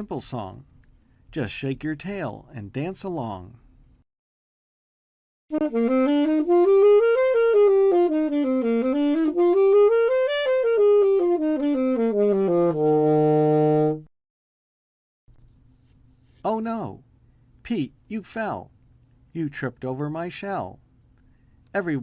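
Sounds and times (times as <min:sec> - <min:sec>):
solo wind instrument runs: 0:05.5 - 0:14.1.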